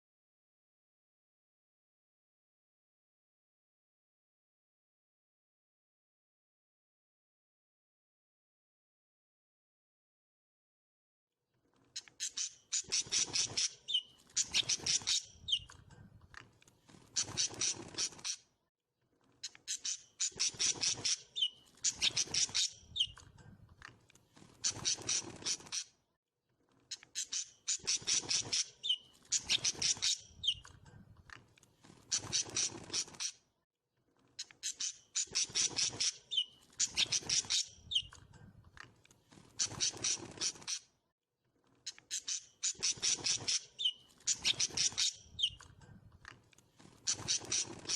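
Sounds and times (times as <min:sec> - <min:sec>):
birds harsh chattering: 0:12.0 - 0:15.8, 0:19.4 - 0:23.2, 0:27.0 - 0:30.7, 0:34.6 - 0:38.2, 0:42.1 - 0:45.7, 0:47.0 - 0:47.9
birds short chirps: 0:12.0 - 0:16.0, 0:19.4 - 0:23.3, 0:26.9 - 0:30.8, 0:34.4 - 0:38.4, 0:41.9 - 0:45.8, 0:47.0 - 0:47.9
songbird trilling: 0:12.3 - 0:15.7, 0:19.8 - 0:23.2, 0:27.3 - 0:30.6, 0:34.8 - 0:38.1, 0:42.2 - 0:45.6.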